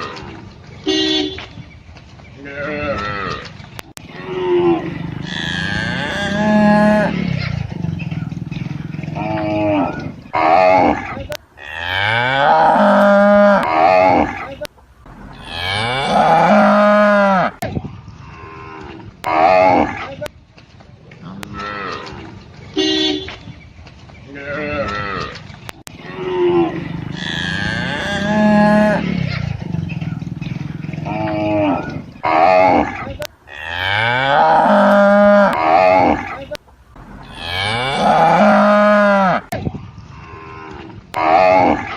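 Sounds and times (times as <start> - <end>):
cattle mooing: 2.4 - 17.6, 24.3 - 39.6.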